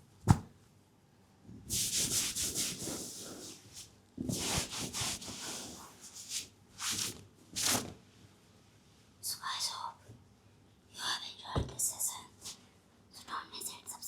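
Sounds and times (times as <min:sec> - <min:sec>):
hands rubbing skin: 0:01.7 - 0:07.8.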